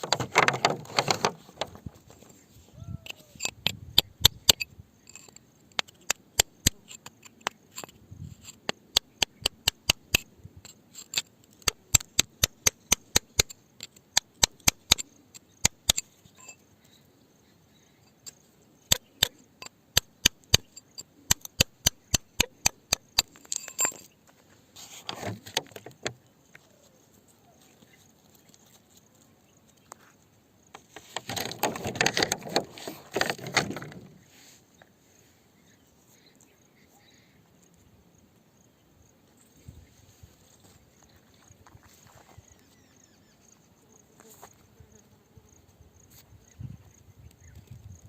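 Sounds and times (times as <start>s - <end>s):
scraping rustle: 0.0s - 3.8s, 23.3s - 34.8s
hand tool tapping rock: 3.0s - 16.5s, 18.9s - 24.1s.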